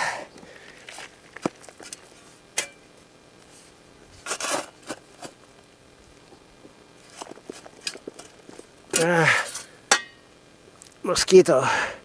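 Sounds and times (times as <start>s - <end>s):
scraping and rustling: 3.4s - 5.4s, 7.0s - 8.7s.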